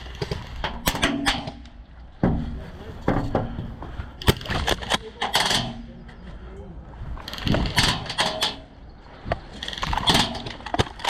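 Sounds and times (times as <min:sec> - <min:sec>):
background voices: 0:02.2 - 0:10.8
mechanical clicks and knocks: 0:04.2 - 0:05.9, 0:07.2 - 0:08.7.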